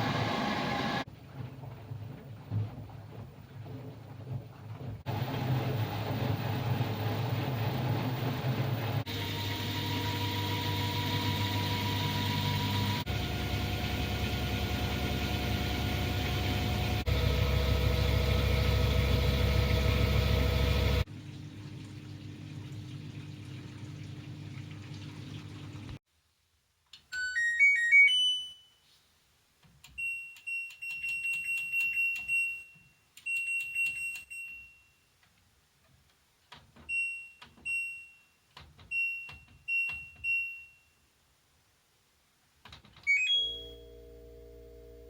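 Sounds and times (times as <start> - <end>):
washing machine humming: 0.0 - 26.0, 43.4 - 45.0.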